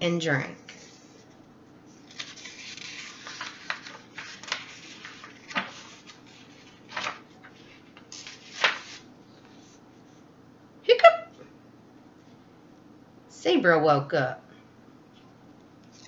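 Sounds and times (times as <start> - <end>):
soft paper rustling: 0.6 - 10.3, 15.1 - 16.0
sharp paper flicks: 2.0 - 7.4, 8.0 - 9.1.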